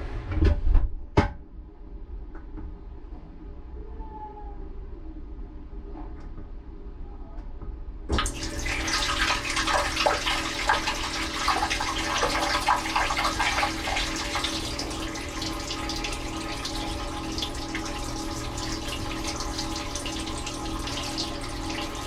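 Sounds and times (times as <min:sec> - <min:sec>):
dishwasher hum: 0:08.1 - 0:22.0
water spraying inside dishwasher: 0:08.1 - 0:22.0.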